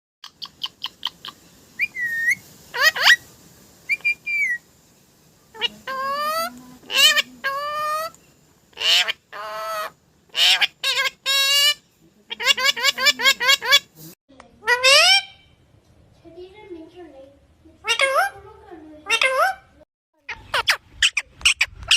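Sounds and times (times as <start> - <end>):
bird calling: 0.2 - 3.3, 3.9 - 4.7, 5.5 - 13.9.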